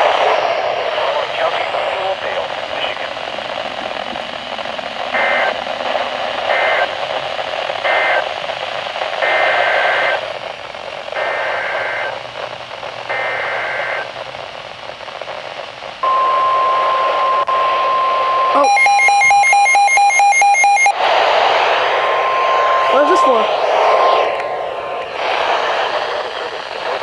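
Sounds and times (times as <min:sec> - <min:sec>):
radio static: 0:00.0 - 0:27.0
warbling data bursts: 0:02.5 - 0:08.2, 0:18.5 - 0:20.9
steady alarm tone: 0:16.0 - 0:21.0.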